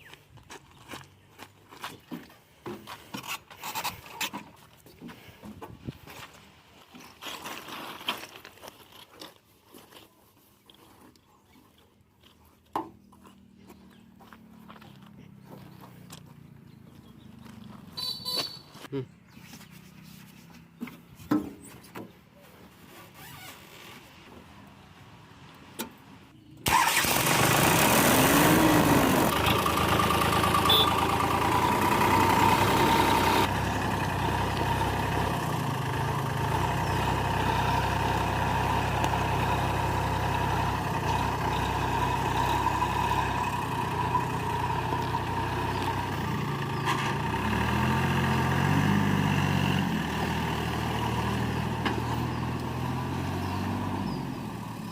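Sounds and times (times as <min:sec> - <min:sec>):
heavy diesel engine running: 0:26.7 - 0:54.9.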